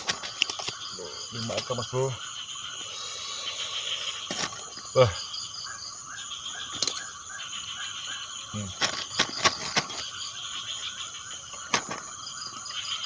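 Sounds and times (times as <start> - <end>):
frog chorus: 0.0 - 13.0
frog call pulsing: 0.5 - 8.7.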